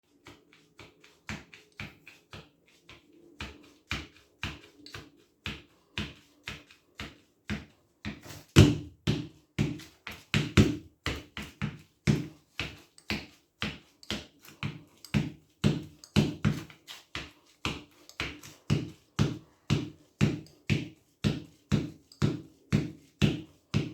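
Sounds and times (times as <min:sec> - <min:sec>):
footsteps walking: 0:08.1 - 0:08.9.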